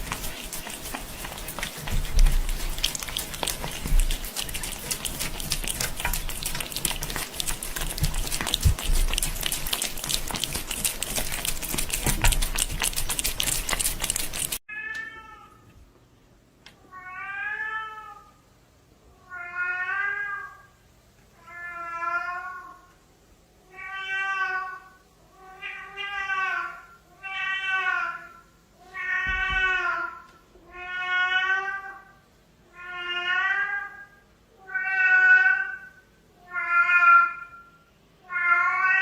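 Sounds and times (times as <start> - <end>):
cat meowing: 23.7 - 32.1, 32.7 - 37.7, 38.3 - 39.0.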